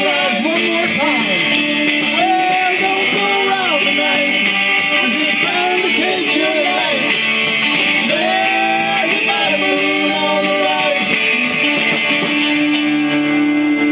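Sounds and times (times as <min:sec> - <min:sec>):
person singing: 0:00.0 - 0:11.4
guitar playing: 0:00.0 - 0:13.9.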